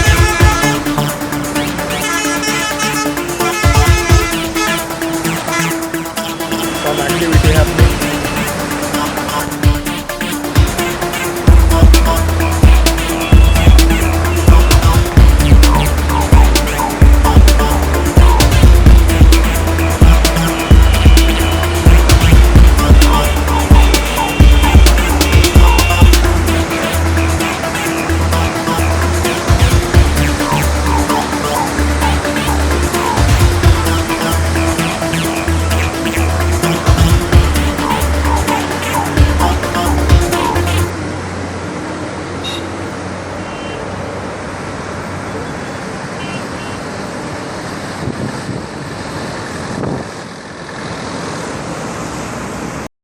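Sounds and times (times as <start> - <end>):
electronic dance music: 0.0 - 41.0
heavy vehicles engine rumble: 0.0 - 52.9.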